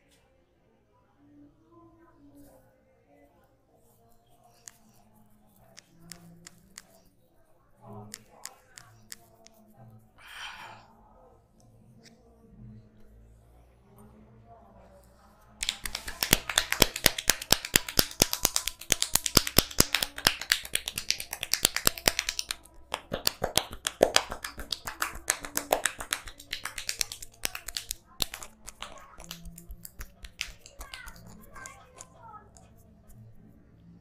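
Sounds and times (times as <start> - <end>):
hands slapping on head: 15.6 - 32.1.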